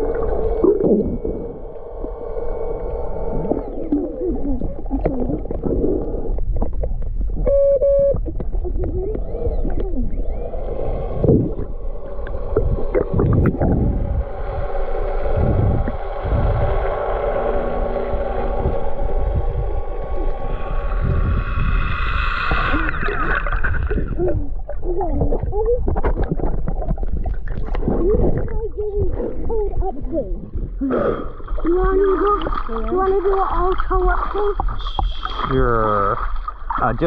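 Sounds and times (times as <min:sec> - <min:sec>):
small motor humming: 0:00.0 - 0:04.5, 0:09.0 - 0:23.1
gurgling bubbling water: 0:00.0 - 0:37.0.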